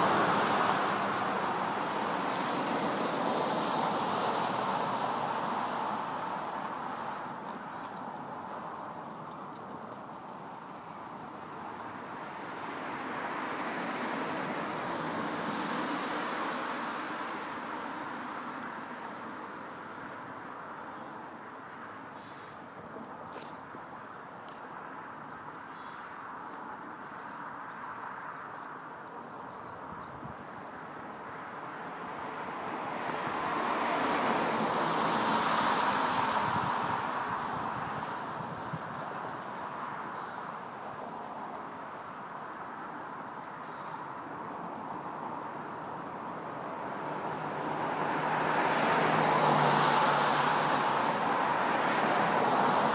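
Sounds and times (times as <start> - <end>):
vehicles passing: 0.0 - 52.9
faint insect chirring: 17.8 - 31.9, 38.5 - 47.1.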